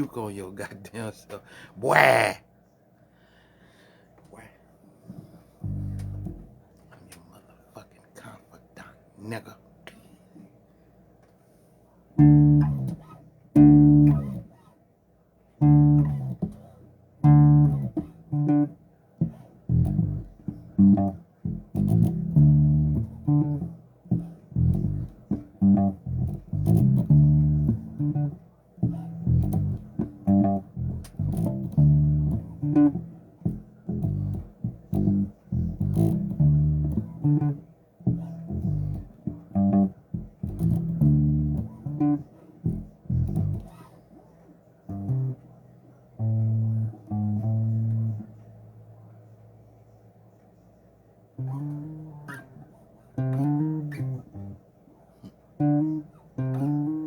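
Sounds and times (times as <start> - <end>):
electric bass guitar: 1.8 - 2.4, 5.6 - 6.6, 12.2 - 14.7, 15.6 - 43.9, 44.9 - 45.5, 46.1 - 48.4, 51.4 - 54.6, 55.2 - 57.0.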